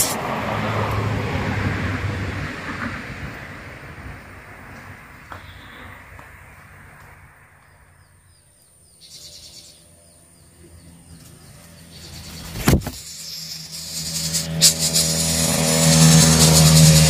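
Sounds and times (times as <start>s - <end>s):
brief hiss: 0.0s - 0.3s
bird chirping: 7.6s - 14.6s.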